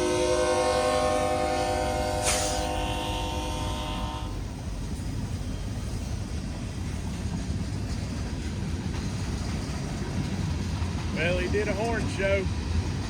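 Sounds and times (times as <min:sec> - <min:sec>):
locomotive air horn chord: 0:00.0 - 0:04.4.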